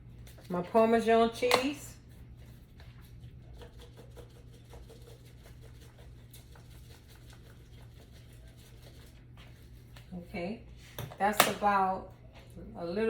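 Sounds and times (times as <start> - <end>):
grated cheese pattering into bowl: 2.6 - 10.1.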